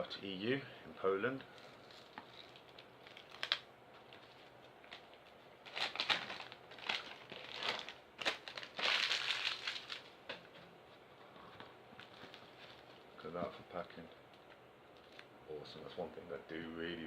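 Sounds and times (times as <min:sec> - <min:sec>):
packing material crinkling: 0:01.5 - 0:10.4, 0:12.0 - 0:13.2, 0:14.4 - 0:15.3.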